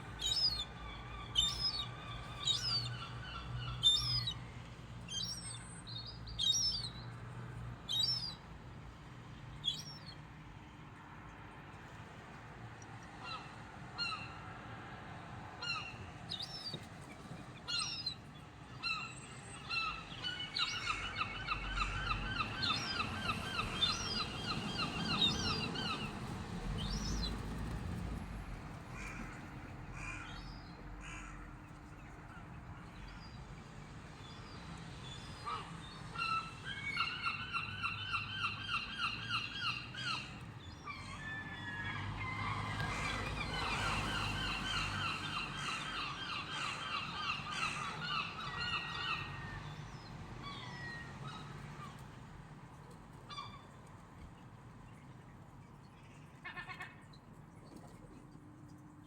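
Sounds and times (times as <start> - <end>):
birds calling: 0.0 - 7.0, 18.8 - 27.8, 35.2 - 52.0.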